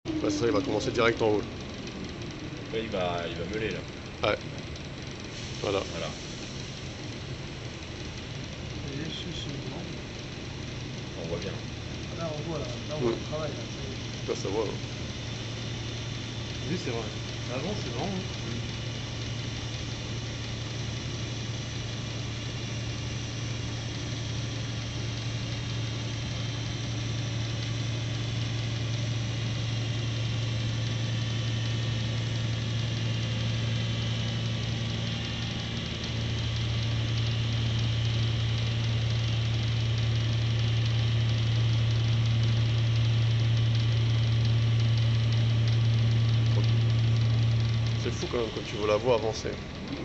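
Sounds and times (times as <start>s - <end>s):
wheel lathe machine hum: 0.0s - 50.0s.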